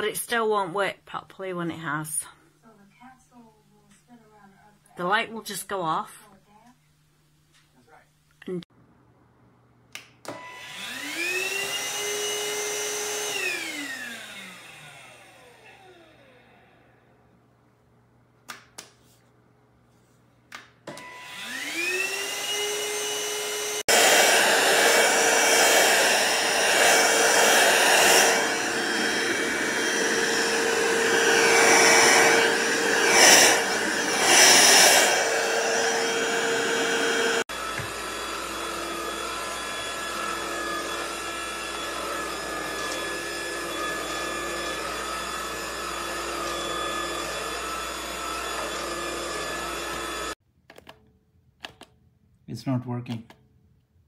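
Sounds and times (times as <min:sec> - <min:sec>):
vacuum cleaner motor whine: 0:10.3 - 0:17.1, 0:20.9 - 0:50.4.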